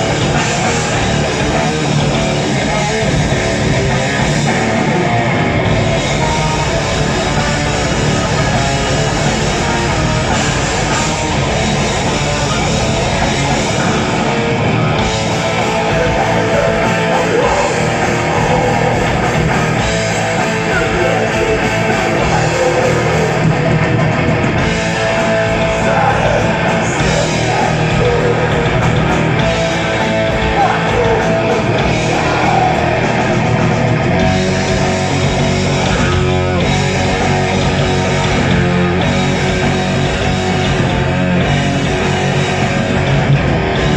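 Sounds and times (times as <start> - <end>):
distorted electric guitars: 0.0 - 43.9
heavy metal band playing live: 0.0 - 43.9.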